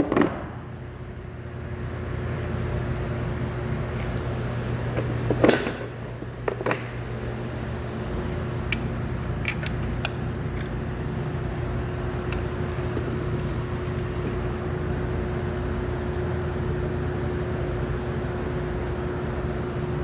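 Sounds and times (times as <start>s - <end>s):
loud clunk: 0.0s - 0.8s.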